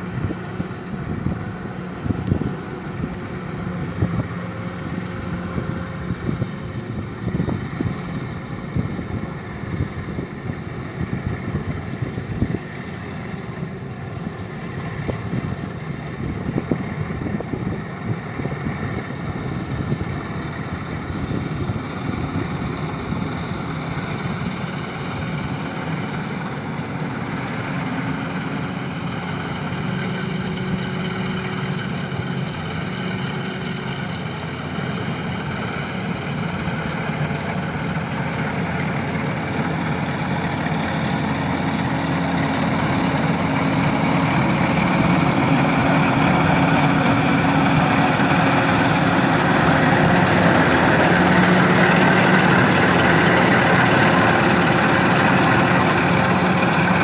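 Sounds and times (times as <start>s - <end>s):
engine knocking and clatter: 0.0s - 57.0s
engine running with low hum: 0.0s - 57.0s.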